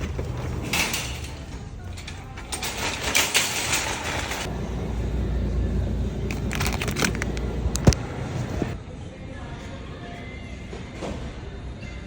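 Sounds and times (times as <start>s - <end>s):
music playing quietly: 0.0s - 12.0s
road and engine rumble: 4.2s - 8.8s.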